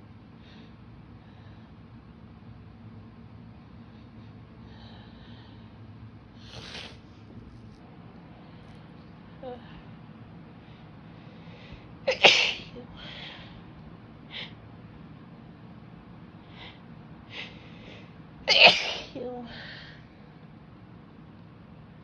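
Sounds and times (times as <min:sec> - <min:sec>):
woman sneezing: 0:12.1 - 0:12.8, 0:18.5 - 0:19.4.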